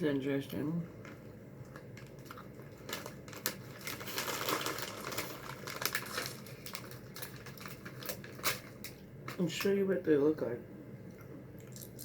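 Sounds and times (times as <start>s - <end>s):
plastic packaging crinkling: 1.0s - 9.4s.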